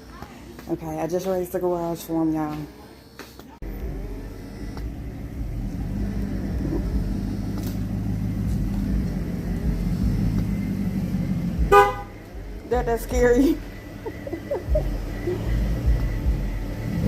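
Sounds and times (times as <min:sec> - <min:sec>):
car engine rumbling: 0:03.6 - 0:17.0
car horn blast: 0:11.6 - 0:12.3.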